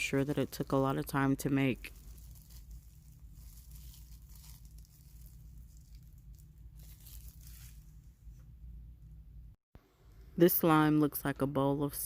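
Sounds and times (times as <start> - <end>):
slime squishing and crackling: 0.0 - 8.0.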